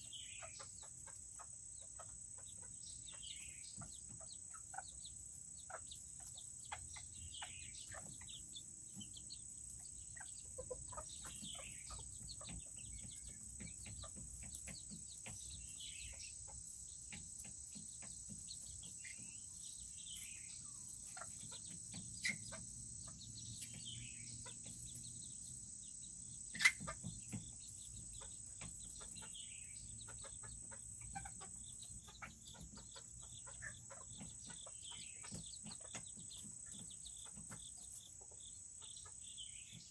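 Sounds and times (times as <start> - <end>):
chickens peeping and clucking: 0.0 - 39.9.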